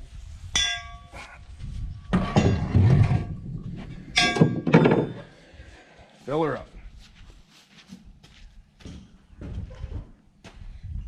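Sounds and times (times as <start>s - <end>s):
sharp metallic clanks: 0.6s - 1.2s, 3.9s - 5.4s
metal scraping: 2.1s - 5.4s
thudding: 2.1s - 5.4s.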